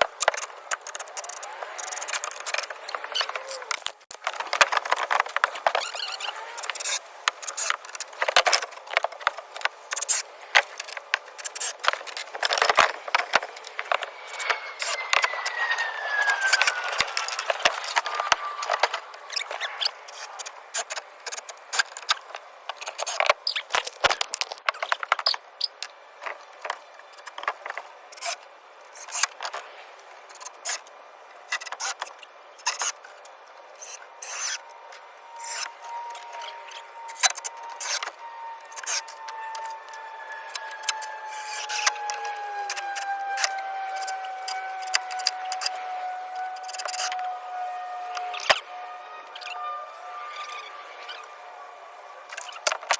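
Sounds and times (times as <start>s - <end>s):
wood scraping and rubbing: 0.0s - 28.4s, 33.8s - 47.4s
thin steady whine: 0.0s - 52.9s
falling squeal: 0.4s - 3.8s, 5.7s - 7.8s, 13.7s - 22.2s, 33.8s - 52.7s.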